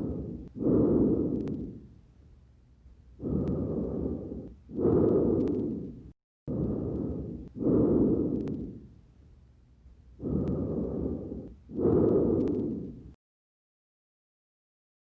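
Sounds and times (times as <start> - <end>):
breath sounds through chest: 0.0 - 1.9, 3.2 - 9.0, 10.2 - 13.2
sharp clicks: 1.3 - 1.7, 4.4 - 5.8, 8.3 - 8.7, 11.5 - 12.8.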